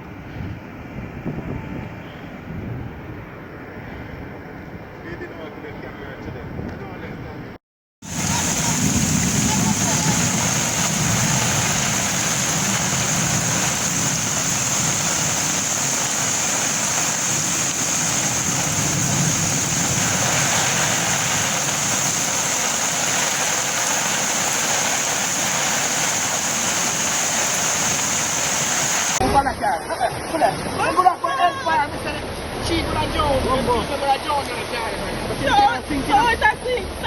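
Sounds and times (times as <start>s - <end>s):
floodwater rushing: 8.0s - 37.0s.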